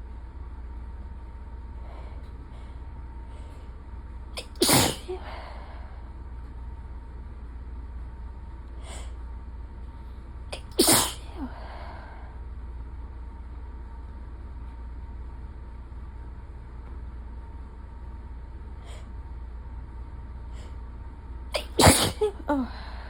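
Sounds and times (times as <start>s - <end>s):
steady low hum: 0.0s - 23.0s
soft breath: 1.8s - 3.8s, 5.1s - 6.2s, 8.8s - 9.3s, 11.3s - 12.4s, 18.8s - 19.2s, 20.5s - 20.9s, 22.6s - 23.0s
person sneezing loudly: 4.4s - 5.3s, 10.6s - 11.5s, 21.6s - 22.7s
sharp intake of breath: 10.8s - 12.4s.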